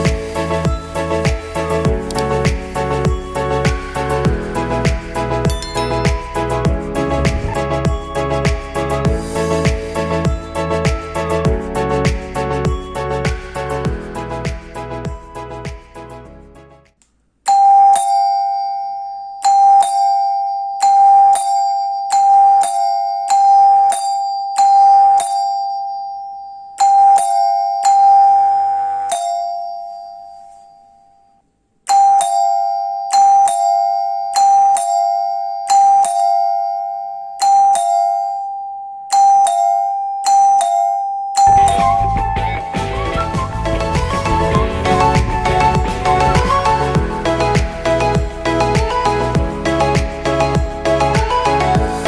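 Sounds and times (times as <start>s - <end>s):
two-note doorbell chime: 5.5s - 8.9s, 17.5s - 42.4s.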